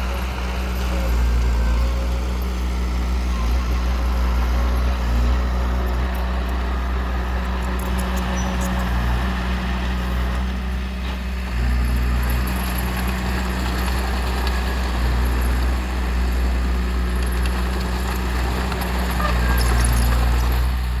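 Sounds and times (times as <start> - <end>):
heavy diesel engine droning: 0.0 - 21.0.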